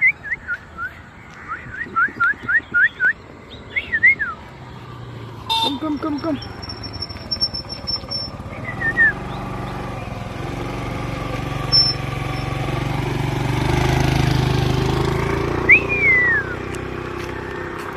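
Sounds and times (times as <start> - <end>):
vehicle engine passing: 1.3 - 17.9
high falling chirps: 5.5 - 12.8.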